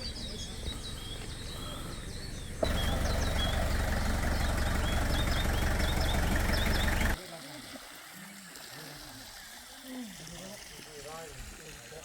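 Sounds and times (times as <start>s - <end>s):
low engine rumble: 0.0s - 7.2s
small birds chirping: 0.0s - 7.2s.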